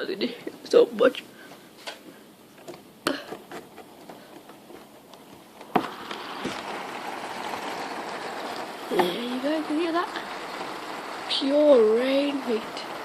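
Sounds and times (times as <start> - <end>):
heavy rain hissing: 5.0 - 13.0.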